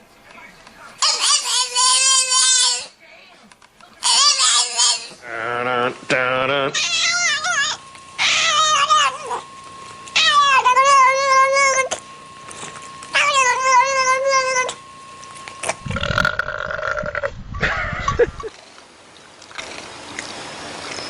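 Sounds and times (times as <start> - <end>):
cat yowling: 6.7 - 9.5, 10.2 - 12.0, 13.1 - 14.8.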